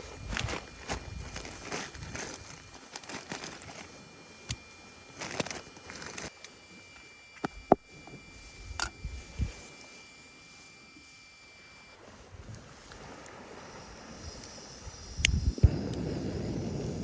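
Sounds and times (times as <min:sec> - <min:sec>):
rustling and crinkling: 0:00.0 - 0:06.4.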